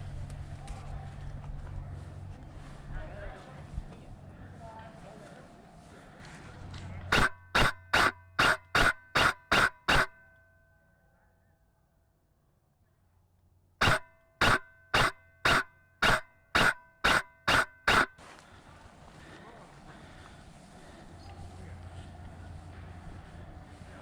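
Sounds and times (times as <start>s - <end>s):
airsoft rifle shots: 7.1s - 10.5s, 13.8s - 18.2s.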